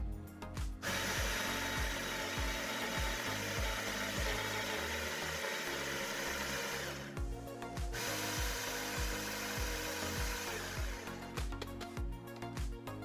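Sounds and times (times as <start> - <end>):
background music with steady beat: 0.0 - 13.0
coffee grinder grinding beans: 0.8 - 7.3, 7.9 - 11.7.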